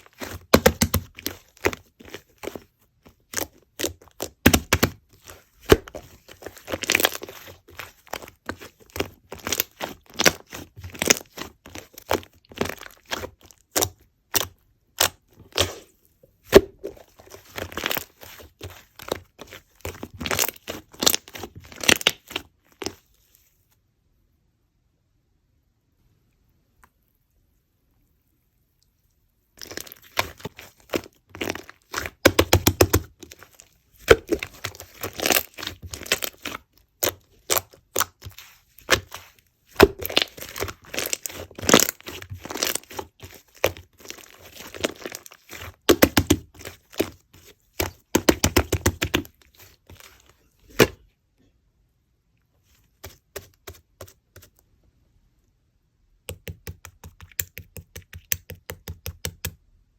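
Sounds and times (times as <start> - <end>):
slime crackling and popping: 0.0 - 15.8, 29.6 - 51.0.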